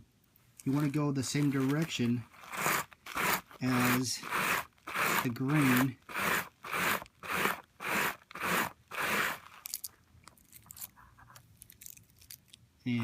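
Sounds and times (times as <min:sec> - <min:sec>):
scouring pad scrubbing metal: 0:00.7 - 0:09.5.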